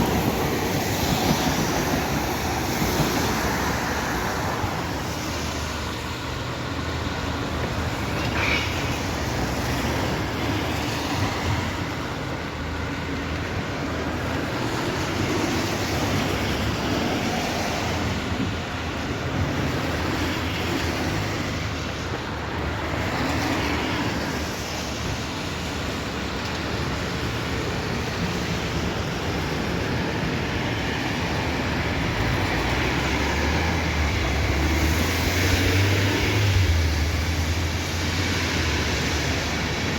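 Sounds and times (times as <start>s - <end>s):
train passing: 0.0s - 39.9s.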